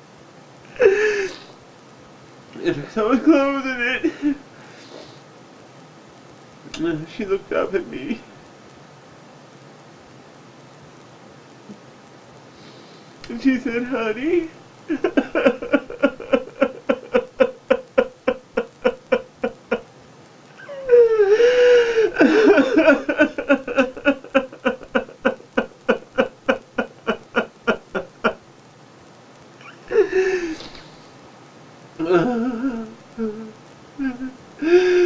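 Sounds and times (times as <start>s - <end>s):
man sobbing: 0.7s - 1.5s, 2.6s - 4.5s, 13.2s - 19.9s, 20.6s - 28.4s, 29.6s - 30.8s, 32.0s - 35.0s
man wailing: 13.7s - 19.8s, 20.6s - 28.4s, 29.6s - 30.6s, 32.0s - 35.0s.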